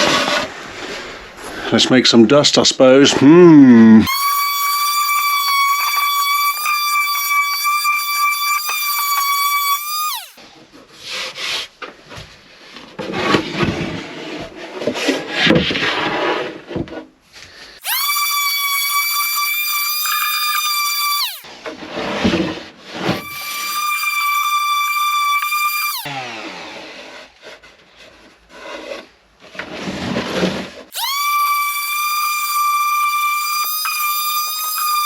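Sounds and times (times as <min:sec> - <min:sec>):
high-pitched electric power tool: 0:03.9 - 0:10.4, 0:17.8 - 0:21.5, 0:23.1 - 0:27.0, 0:30.9 - 0:35.0.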